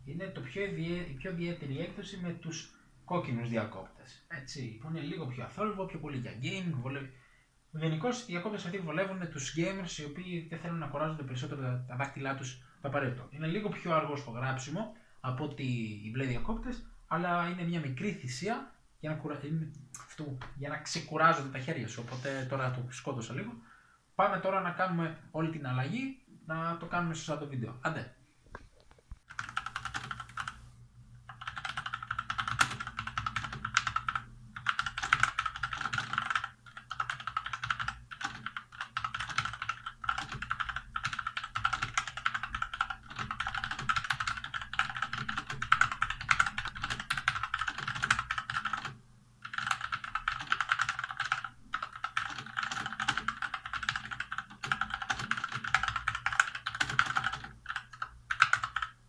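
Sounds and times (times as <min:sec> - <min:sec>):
mechanical keyboard typing: 0:29.3 - 0:30.6, 0:31.3 - 0:59.0.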